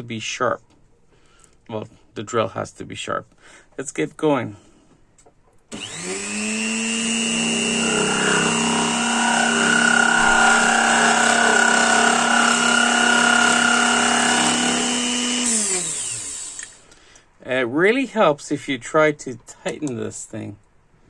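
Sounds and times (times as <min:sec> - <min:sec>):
drill motor humming and whining: 0:05.7 - 0:16.8.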